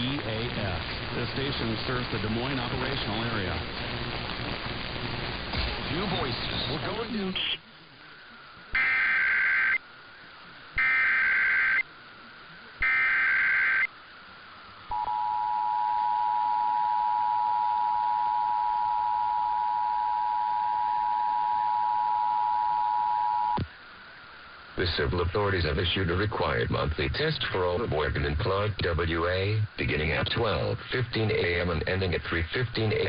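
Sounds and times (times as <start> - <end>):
warbling digital data tones: 8.7 - 9.8.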